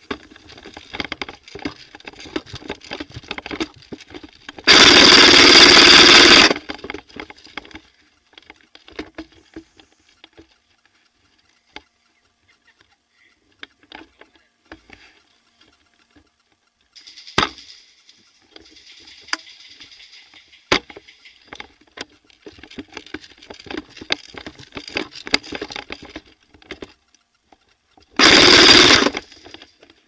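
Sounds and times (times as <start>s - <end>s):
airsoft gun full-auto fire: 4.6s - 6.7s, 28.2s - 29.3s
faint clicks: 6.5s - 28.2s
rustling and knocks: 15.6s - 28.2s.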